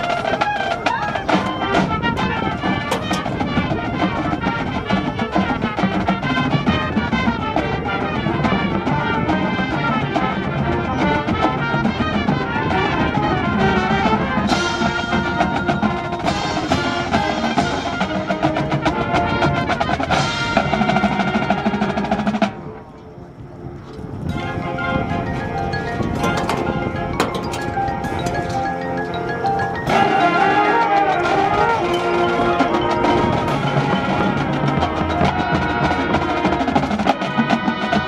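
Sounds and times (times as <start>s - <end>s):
rapid snare drum strokes: 0.0s - 7.8s
held brass chords: 0.0s - 38.0s
marching band playing: 0.0s - 38.0s.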